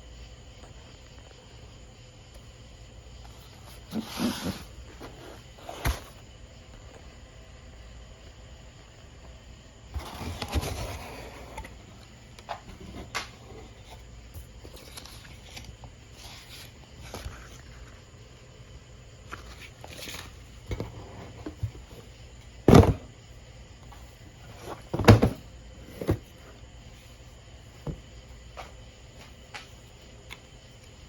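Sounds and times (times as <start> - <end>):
loud thumps: 22.7 - 23.1.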